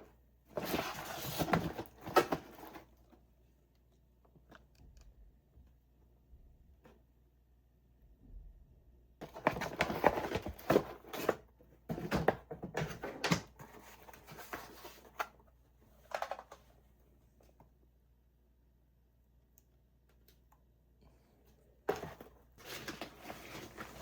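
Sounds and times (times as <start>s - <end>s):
packaging rustling and crinkling: 0.5s - 3.0s, 21.9s - 24.0s.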